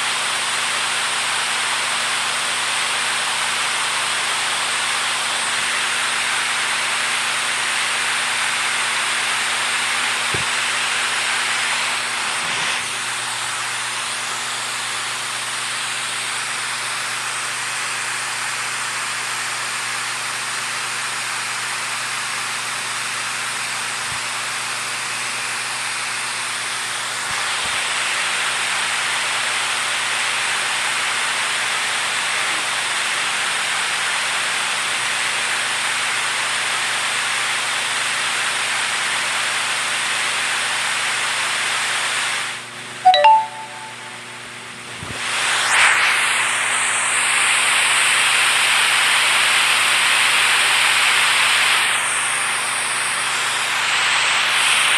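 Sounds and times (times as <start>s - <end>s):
brief pitched chirp: 43.1s - 44.2s.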